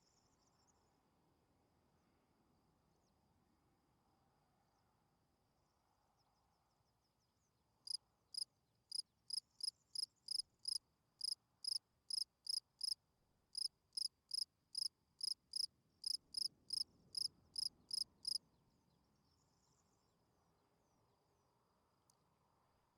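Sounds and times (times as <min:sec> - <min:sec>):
cricket chirping: 0:08.9 - 0:13.0, 0:13.6 - 0:18.4.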